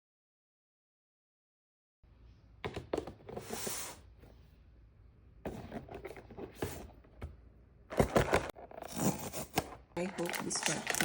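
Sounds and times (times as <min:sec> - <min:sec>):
plastic packaging crinkling: 0:08.7 - 0:11.0.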